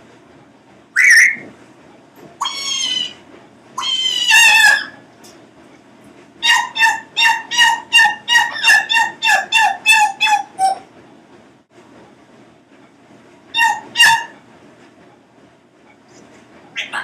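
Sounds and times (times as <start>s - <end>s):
parrot calling: 1.0s - 1.4s, 2.4s - 3.2s, 3.8s - 5.0s, 6.4s - 10.9s, 13.5s - 14.4s, 16.8s - 17.0s.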